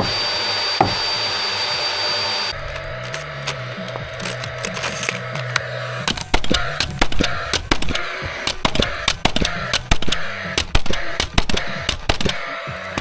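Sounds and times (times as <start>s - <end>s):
hammer nailing timber: 0.0s - 1.2s, 6.1s - 13.0s.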